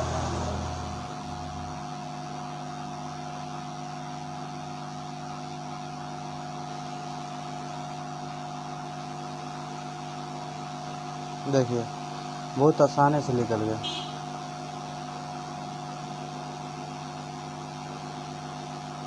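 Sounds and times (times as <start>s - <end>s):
low rumble: 0.0s - 1.9s
electrical hum: 0.0s - 3.2s
mid-pitched whine: 0.0s - 19.0s.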